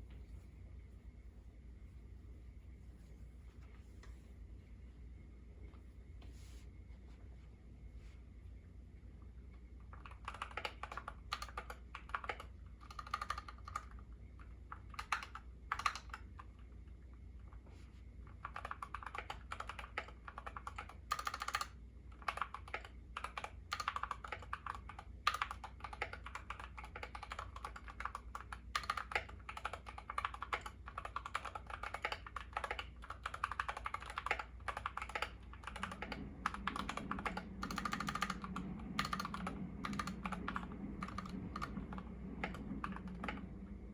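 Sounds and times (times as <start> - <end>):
mechanical keyboard typing: 9.8 - 16.6, 18.3 - 43.5.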